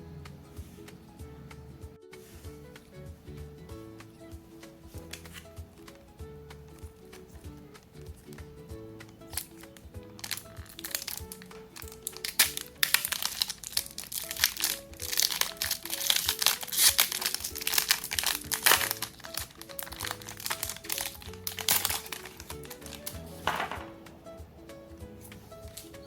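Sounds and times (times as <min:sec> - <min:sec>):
simple background melody: 0:00.0 - 0:26.0
foil wrapper crinkling: 0:09.3 - 0:23.9.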